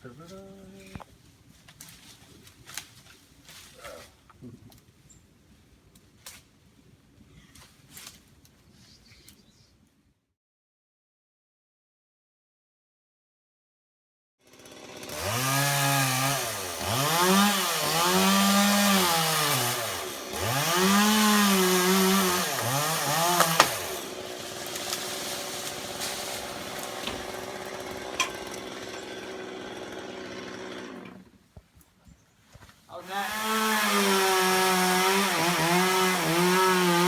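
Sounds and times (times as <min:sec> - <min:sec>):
chainsaw cutting wood: 0:14.4 - 0:31.4, 0:33.0 - 0:37.0.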